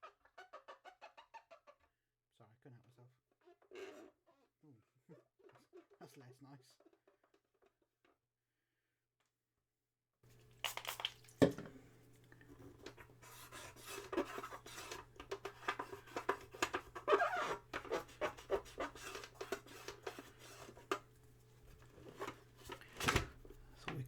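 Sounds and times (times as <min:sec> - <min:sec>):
swab scrubbing a rubber roller: 0:12.4 - 0:22.9
tape deck running: 0:21.9 - 0:24.0.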